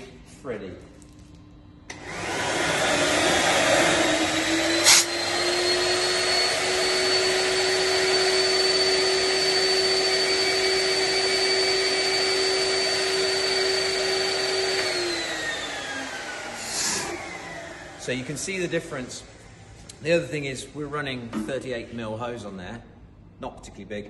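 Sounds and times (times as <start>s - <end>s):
vacuum motor whine: 1.9s - 18.3s.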